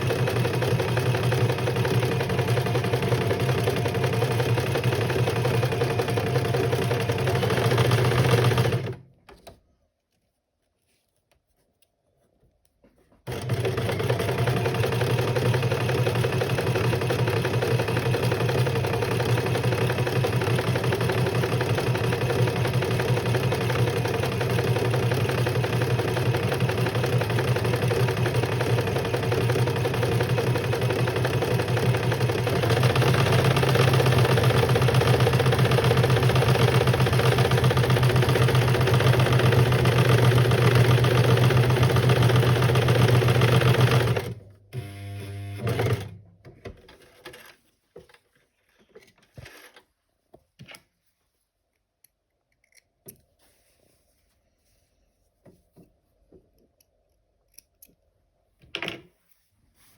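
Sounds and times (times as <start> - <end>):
electric sewing machine stitching: 0.0 - 9.1, 13.3 - 46.2.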